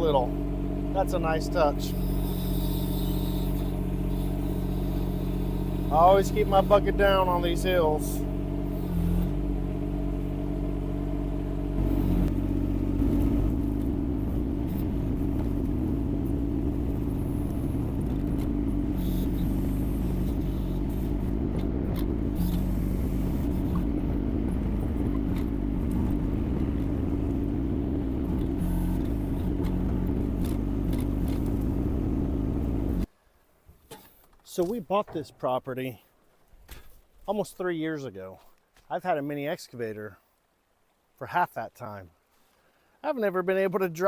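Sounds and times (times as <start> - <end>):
diesel excavator engine running: 0.0 - 33.1.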